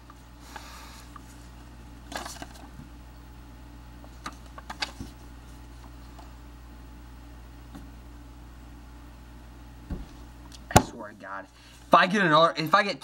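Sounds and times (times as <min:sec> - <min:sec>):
steady low hum: 0:00.0 - 0:13.0
trading cards rustling: 0:02.1 - 0:02.8.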